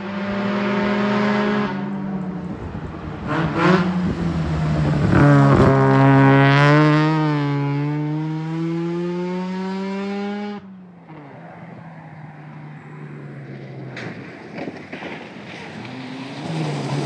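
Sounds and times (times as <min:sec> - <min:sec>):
rally car engine accelerating: 0:00.0 - 0:17.0
gravel noise: 0:02.2 - 0:07.8, 0:11.1 - 0:17.0.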